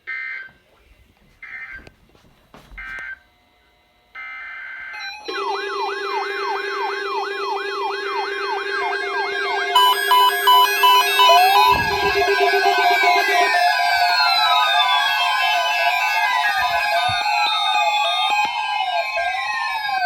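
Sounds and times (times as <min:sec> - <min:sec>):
electronic siren-like tone: 0:04.2 - 0:20.0
steady low tone: 0:09.8 - 0:14.9
digital data bursts: 0:09.8 - 0:20.0
electronic beeping: 0:09.8 - 0:20.0.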